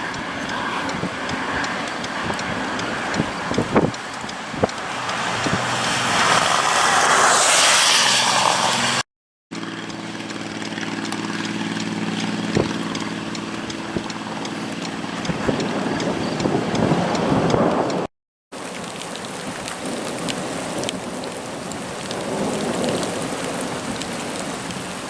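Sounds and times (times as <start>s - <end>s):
rushing wind and rain: 0.0s - 9.0s, 10.1s - 25.0s
low engine hum: 0.0s - 18.1s.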